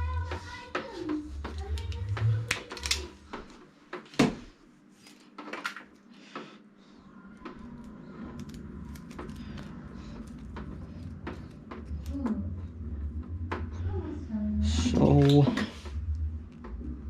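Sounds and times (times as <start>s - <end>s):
steady low hum: 0.0s - 17.0s
hands handling cable and fittings: 8.4s - 12.2s.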